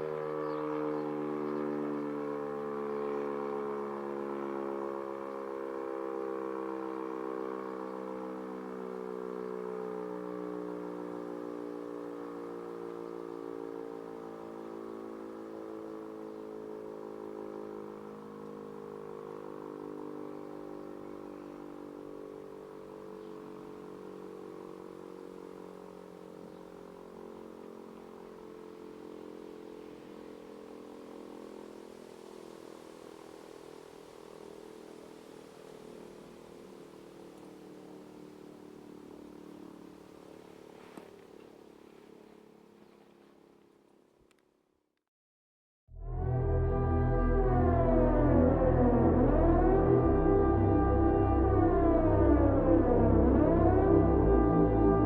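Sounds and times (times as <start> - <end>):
fire siren winding down: 0.0 - 22.4, 45.9 - 55.0.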